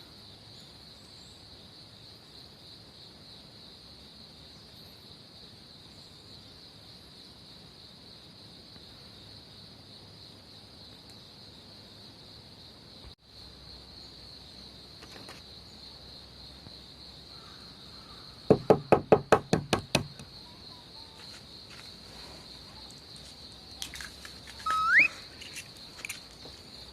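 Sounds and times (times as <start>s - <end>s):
insects chirring: 0.0s - 26.9s
loud knocks: 18.5s - 20.3s
short rising squeak: 24.6s - 25.2s.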